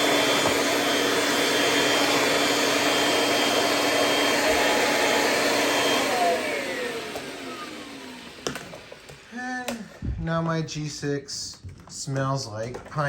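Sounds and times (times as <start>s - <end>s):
motor winding down: 0.0s - 9.3s
vacuum cleaner running: 0.0s - 10.5s.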